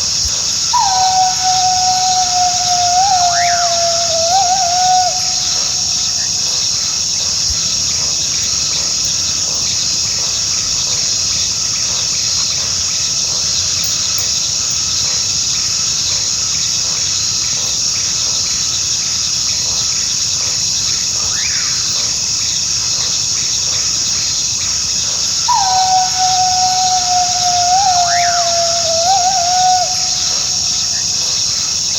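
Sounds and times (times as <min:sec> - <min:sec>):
insects chirring: 0:00.0 - 0:31.9
coyote howling: 0:00.6 - 0:05.8, 0:25.4 - 0:30.8.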